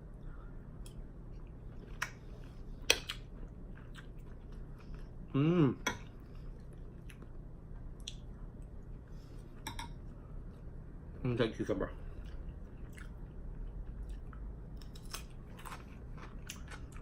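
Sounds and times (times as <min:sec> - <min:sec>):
quiet chewing: 0:12.1 - 0:17.0.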